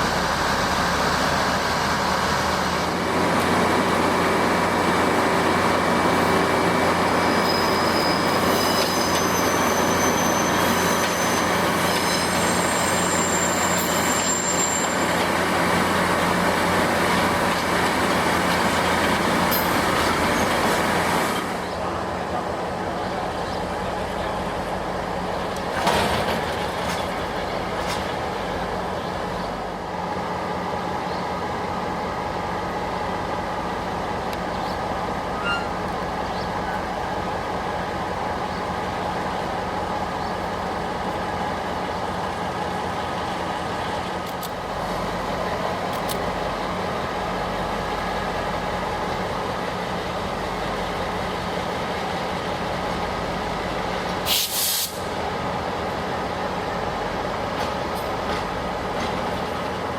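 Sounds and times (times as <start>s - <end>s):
train rumbling: 0.0s - 59.9s.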